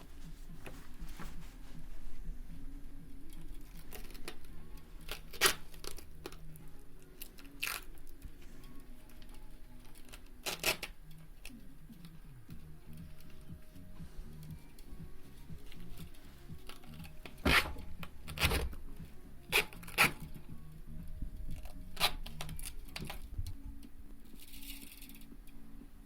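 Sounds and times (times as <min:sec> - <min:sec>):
handling noise of tube and nozzle: 0:03.2 - 0:12.2
duct tape ripping: 0:03.4 - 0:06.6, 0:07.2 - 0:08.2, 0:09.1 - 0:12.1, 0:16.6 - 0:18.8, 0:19.5 - 0:20.5, 0:21.6 - 0:23.3.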